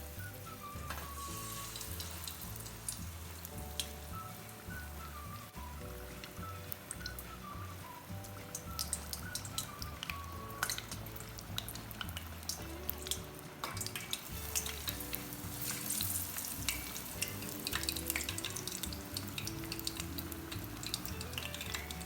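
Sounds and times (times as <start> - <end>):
background music: 0.0 - 22.0
food sizzling in hot oil: 0.0 - 22.0.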